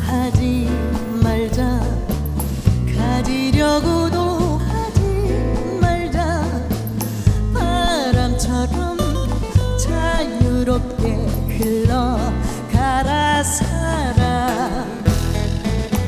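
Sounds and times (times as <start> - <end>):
live slow ballad music: 0.0 - 16.0.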